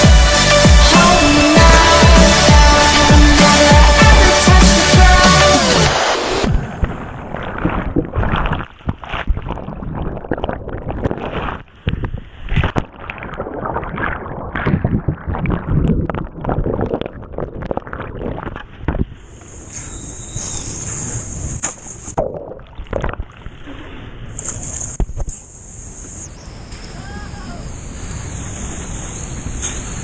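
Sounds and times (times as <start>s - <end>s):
whitewater rushing and splashing: 0.0s - 8.0s.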